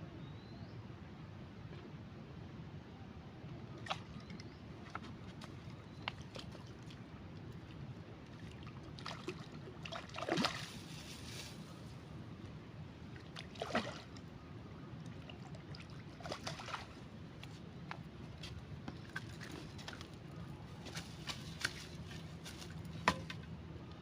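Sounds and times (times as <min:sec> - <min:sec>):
water splashing against bank: 0:03.8 - 0:11.7, 0:13.1 - 0:14.3, 0:15.0 - 0:17.5.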